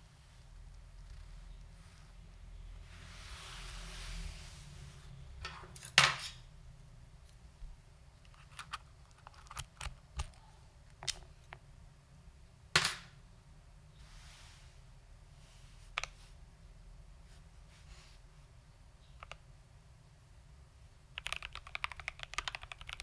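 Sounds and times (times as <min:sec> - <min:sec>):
keyboard keystroke clacks: 0:21.2 - 0:23.0.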